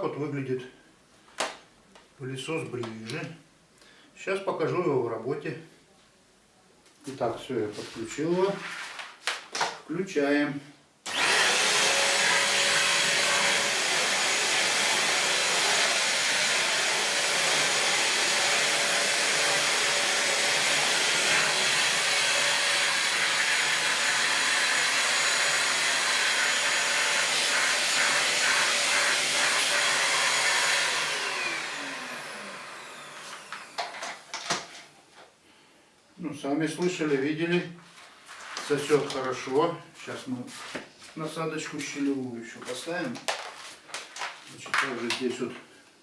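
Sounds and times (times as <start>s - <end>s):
vacuum motor winding down: 11.1s - 33.9s
handheld vacuum cleaner running: 11.1s - 34.2s.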